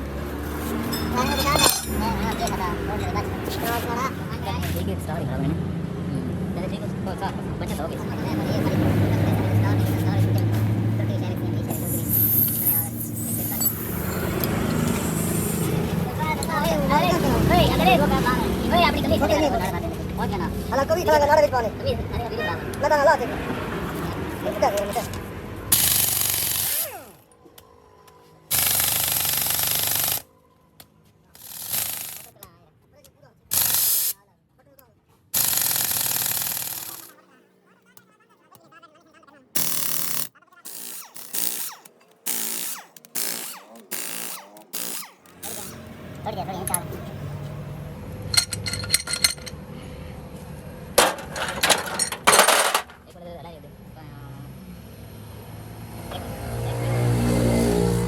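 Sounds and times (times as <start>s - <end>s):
metal tools clinking: 0.5s - 3.9s, 11.9s - 15.0s, 48.3s - 49.6s, 51.0s - 53.1s
air-powered impact wrench: 11.7s - 16.0s, 25.7s - 27.2s, 28.5s - 30.3s, 31.4s - 32.4s, 33.5s - 34.2s, 35.4s - 37.2s, 39.6s - 45.9s.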